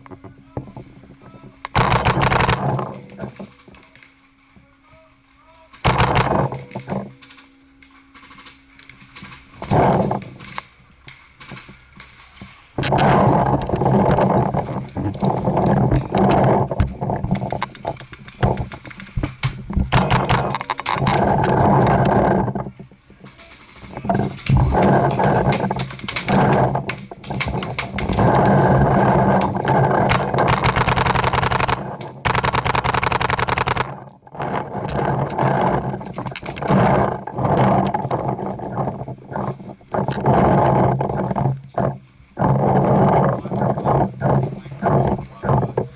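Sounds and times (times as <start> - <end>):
loud rough rumbling: 0.0 - 3.9, 5.8 - 7.2, 9.2 - 11.0, 12.8 - 45.9
paintball markers firing: 1.7 - 3.3, 5.8 - 7.4, 25.6 - 35.7.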